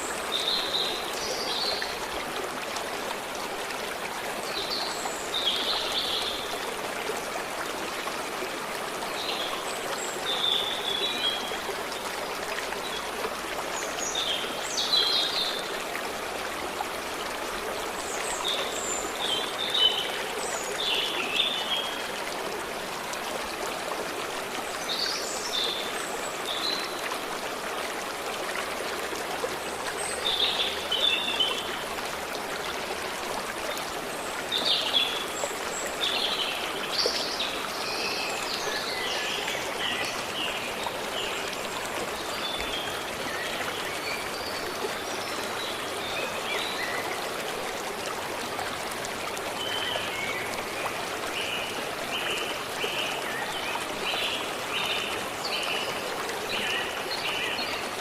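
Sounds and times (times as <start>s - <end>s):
stream running over rocks: 0.0s - 58.0s.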